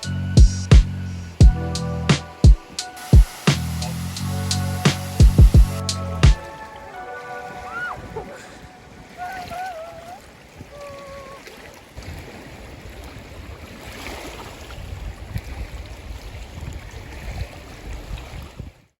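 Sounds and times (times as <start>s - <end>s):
steady rushing noise: 2.1s - 6.6s
wind rumbling on microphone: 7.5s - 19.0s.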